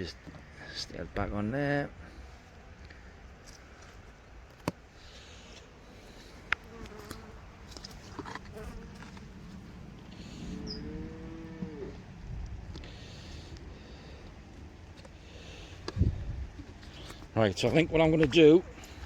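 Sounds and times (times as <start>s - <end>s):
cattle mooing: 10.1s - 12.1s.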